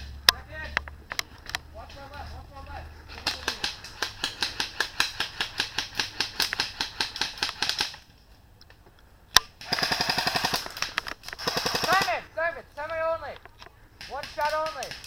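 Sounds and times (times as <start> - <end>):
airsoft guns firing: 3.1 - 8.0, 9.3 - 12.2, 14.0 - 15.0.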